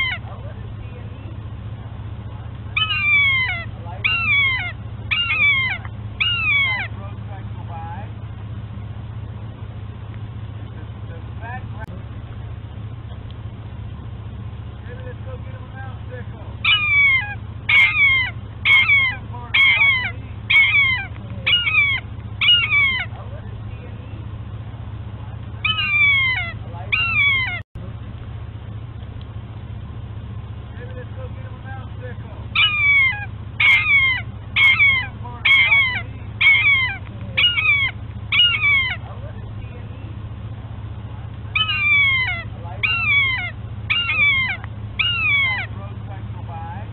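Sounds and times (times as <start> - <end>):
animal squealing calls: 0.0 - 0.4, 2.7 - 7.0, 16.6 - 23.4, 25.6 - 27.6, 32.5 - 39.3, 41.5 - 45.8.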